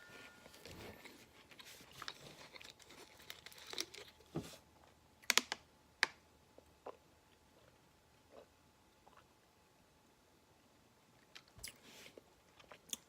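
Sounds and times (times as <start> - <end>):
crinkling: 0.0 - 4.4
soft chewing: 0.2 - 5.0, 6.6 - 9.3, 11.2 - 13.0.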